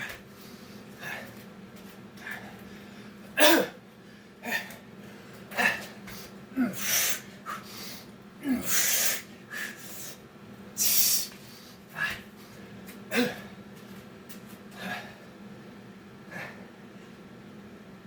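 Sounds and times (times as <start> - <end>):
man grunting: 3.4 - 3.8, 5.5 - 5.9, 6.6 - 6.9, 8.4 - 8.8, 12.0 - 12.2, 13.1 - 13.5
man breathing hard: 4.0 - 10.2, 10.8 - 13.6, 14.7 - 15.3.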